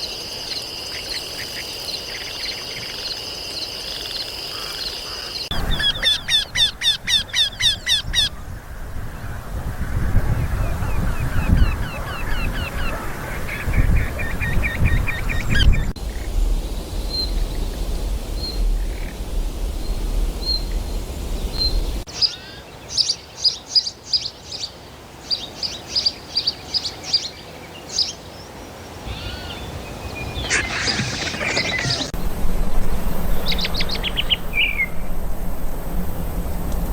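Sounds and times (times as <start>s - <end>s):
birds honking: 4.5s - 6.6s, 29.0s - 32.4s
wind rumble: 5.4s - 22.1s, 29.0s - 36.9s.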